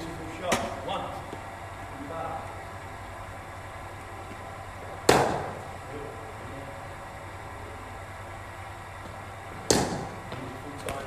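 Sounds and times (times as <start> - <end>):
cricket bat striking ball: 5.0 - 5.6, 9.6 - 11.0.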